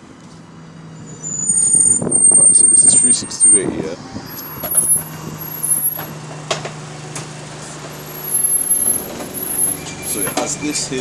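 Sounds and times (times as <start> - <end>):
bus engine low hum: 0.0 - 11.0
thin high whine: 1.1 - 6.1.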